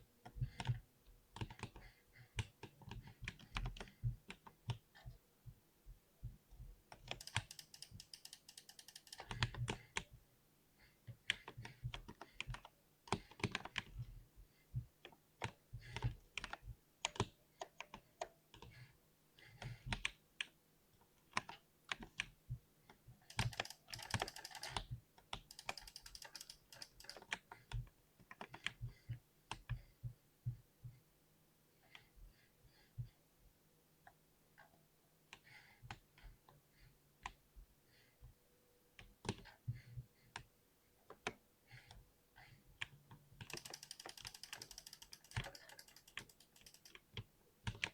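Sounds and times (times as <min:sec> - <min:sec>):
mechanical keyboard typing: 0:07.0 - 0:09.7, 0:23.3 - 0:27.4, 0:43.4 - 0:47.1.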